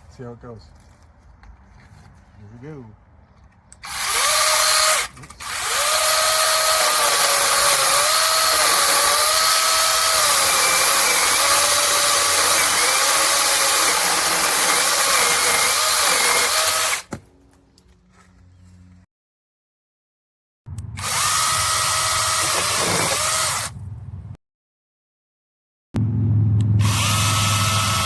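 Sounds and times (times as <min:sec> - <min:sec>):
mini chainsaw motor whining: 0:03.8 - 0:17.1, 0:21.0 - 0:23.7, 0:26.8 - 0:28.0.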